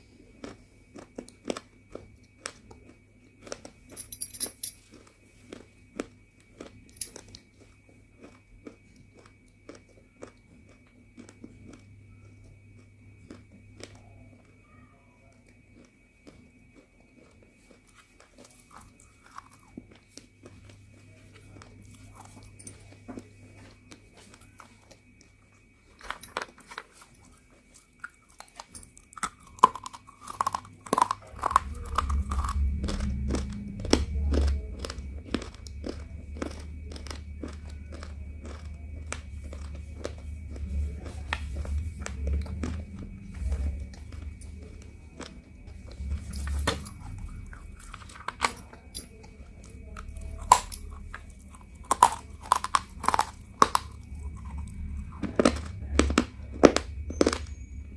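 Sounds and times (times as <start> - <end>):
clay pieces being chewed: 0.0 - 57.9
low rumble: 30.4 - 57.9.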